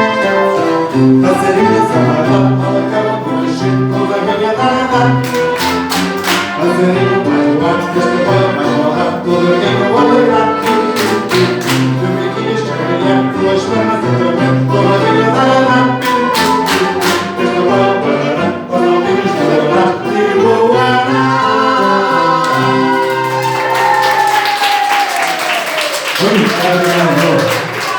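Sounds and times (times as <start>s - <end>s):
person singing: 0.0s - 24.9s
live dance band music: 4.9s - 7.3s, 10.2s - 12.2s, 14.6s - 17.9s.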